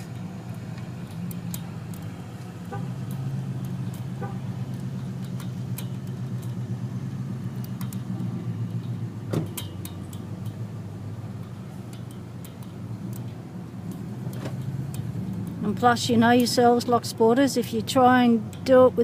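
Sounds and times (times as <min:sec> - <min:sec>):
light metallic clicks: 0:00.0 - 0:06.8, 0:07.4 - 0:15.7, 0:18.4 - 0:18.8
low engine-like hum: 0:00.0 - 0:19.0.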